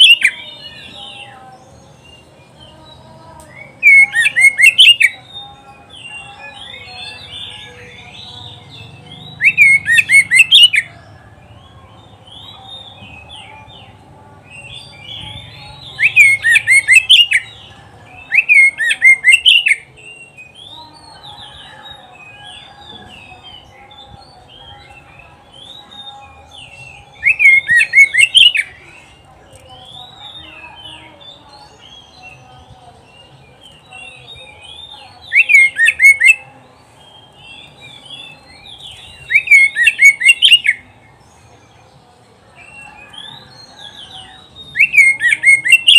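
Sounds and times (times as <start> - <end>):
bird singing whistled phrases: 0.0 - 1.3, 3.5 - 5.4, 9.2 - 10.9, 15.8 - 17.6, 18.2 - 20.8, 25.6 - 28.8, 33.1 - 36.5, 37.1 - 40.9, 42.6 - 45.9.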